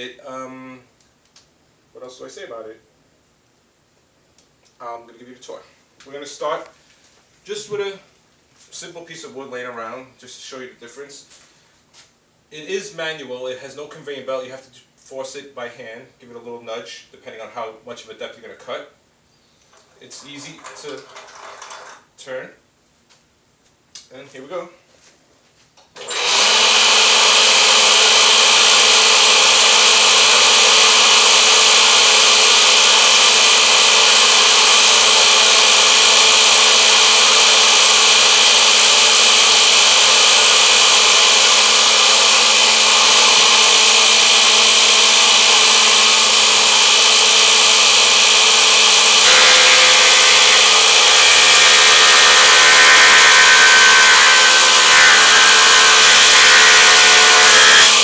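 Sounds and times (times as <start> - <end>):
wood planer whining: 26.0 - 58.0.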